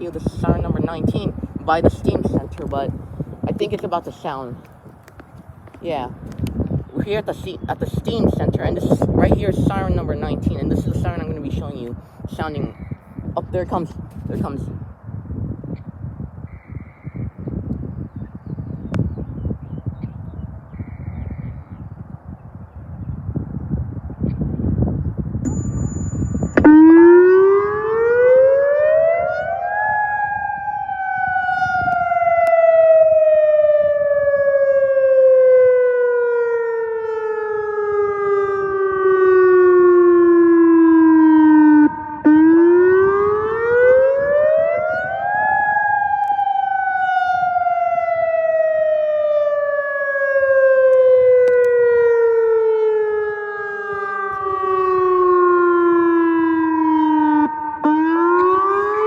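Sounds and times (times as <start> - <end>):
rising and falling warning siren: 0.0 - 5.2, 24.9 - 59.0.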